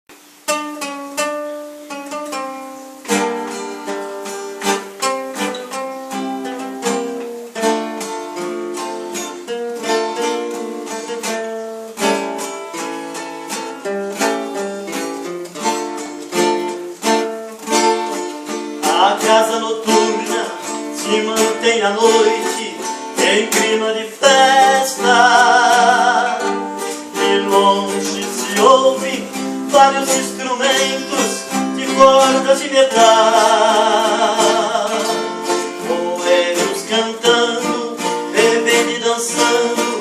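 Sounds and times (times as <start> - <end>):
steel-string guitars picking: 0.2 - 40.0.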